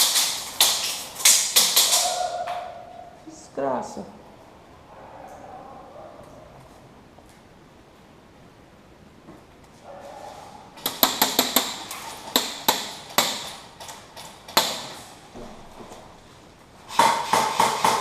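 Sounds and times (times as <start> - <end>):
airsoft guns firing: 0.0 - 2.2.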